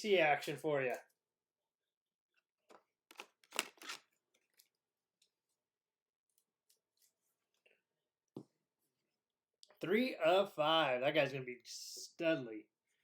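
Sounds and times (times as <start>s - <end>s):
cards and plastic sleeves rustling: 3.1s - 4.7s.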